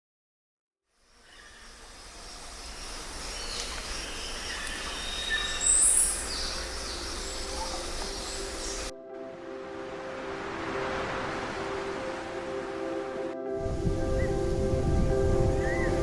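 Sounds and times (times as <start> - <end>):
steady background hiss: 1.0 - 8.9
bird calls: 1.2 - 8.9.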